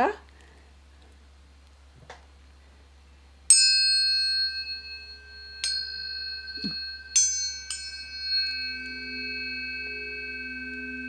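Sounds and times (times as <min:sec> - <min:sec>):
tuning forks ringing: 0:03.5 - 0:11.0.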